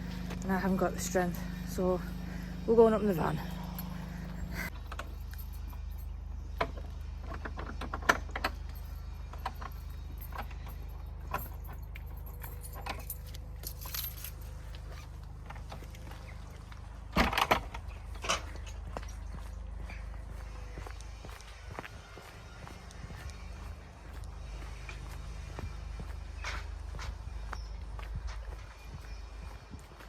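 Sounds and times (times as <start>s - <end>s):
keys jangling: 8.5s - 15.0s.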